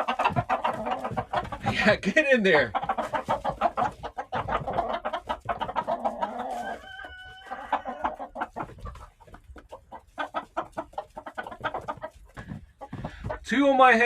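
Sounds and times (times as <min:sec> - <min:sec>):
chickens clucking rapidly: 0:00.0 - 0:14.0
chicken held call: 0:05.9 - 0:08.3.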